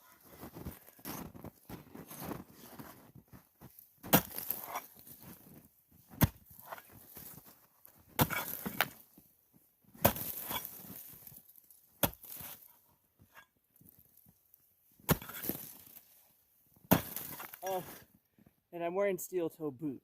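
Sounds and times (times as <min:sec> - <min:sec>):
ice crunching: 0:00.2 - 0:09.2, 0:10.0 - 0:12.8, 0:15.1 - 0:16.2, 0:16.9 - 0:18.1
axe chopping frozen snow: 0:03.7 - 0:07.5, 0:08.1 - 0:09.0, 0:10.0 - 0:11.4, 0:12.0 - 0:12.7, 0:15.0 - 0:16.0, 0:16.8 - 0:18.0.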